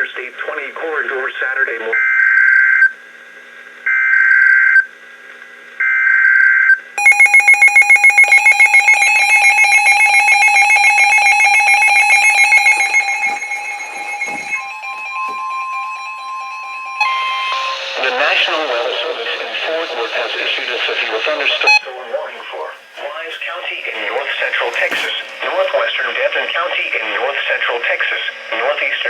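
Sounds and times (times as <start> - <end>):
rapid alarm beeps: 5.8 - 18.5, 21.6 - 21.9
steady warning alarm tone: 5.8 - 26.9.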